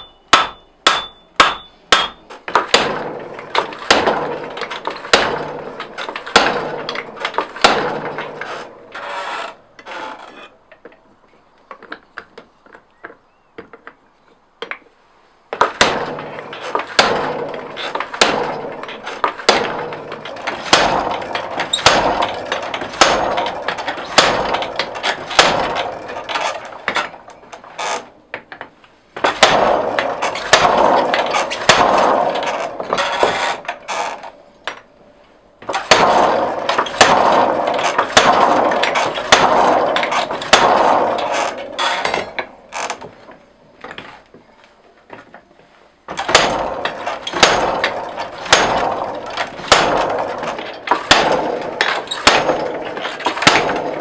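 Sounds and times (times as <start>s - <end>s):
hammer on hot steel: 0.0s - 5.5s
mechanical clatter: 0.0s - 10.4s, 15.6s - 35.0s, 35.6s - 44.2s, 46.1s - 54.0s.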